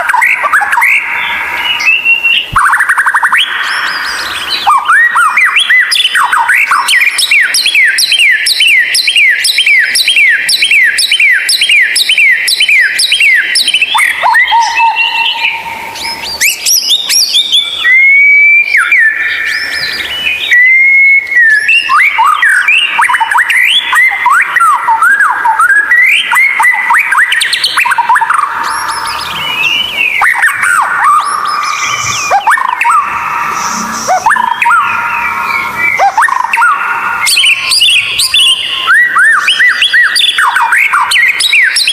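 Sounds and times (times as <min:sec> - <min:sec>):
songbird whistling song: 0:00.0 - 0:41.9.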